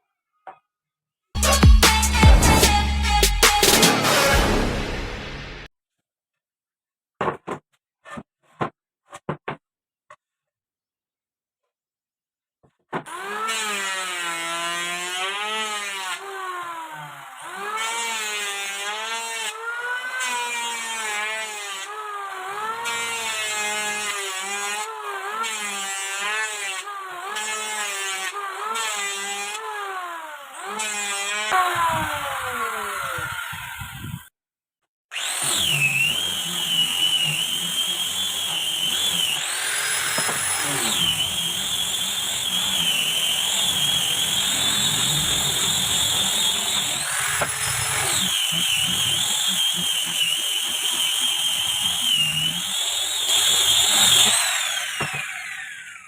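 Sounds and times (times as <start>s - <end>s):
scroll saw cutting wood: 1.4s - 5.7s, 12.9s - 34.3s, 35.1s - 56.0s
power tool high whine: 35.2s - 56.0s.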